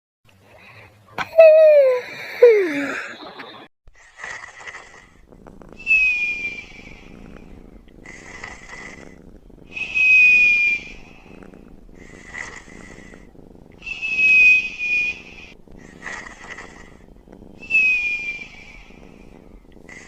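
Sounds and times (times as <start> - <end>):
cartoon purring snore: 4.0 - 20.0
whistle on out-breath: 5.8 - 7.1, 9.7 - 11.0, 17.6 - 18.8.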